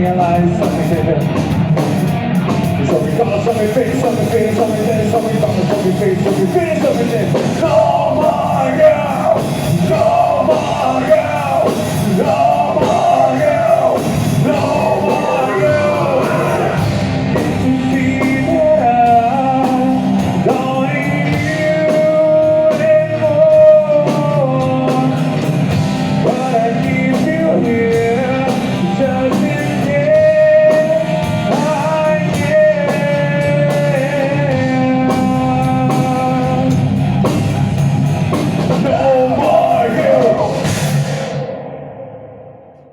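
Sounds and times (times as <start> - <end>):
metal band playing: 0.0 - 42.7
person singing: 2.8 - 25.5, 26.2 - 36.8, 38.7 - 41.6
person shouting: 14.5 - 16.9.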